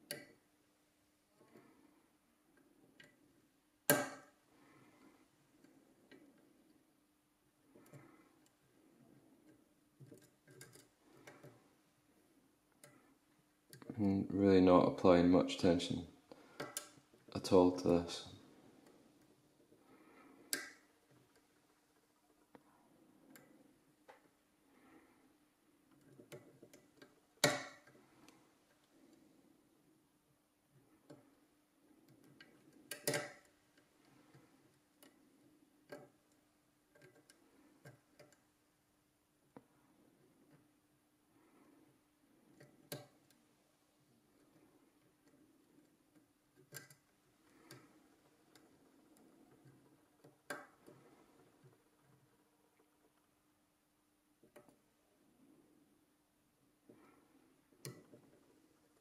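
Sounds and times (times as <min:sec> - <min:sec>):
lock pick clicking and scraping: 0:00.0 - 0:00.4, 0:09.2 - 0:11.6, 0:16.5 - 0:17.3, 0:20.5 - 0:22.1, 0:25.9 - 0:29.2, 0:30.8 - 0:38.5, 0:42.5 - 0:43.3, 0:44.3 - 0:53.0
lock pick clicks: 0:32.1 - 0:33.5.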